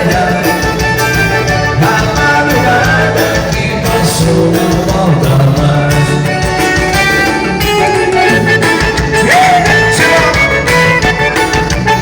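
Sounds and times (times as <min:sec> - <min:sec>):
upbeat dance-band music: 0:00.0 - 0:12.0.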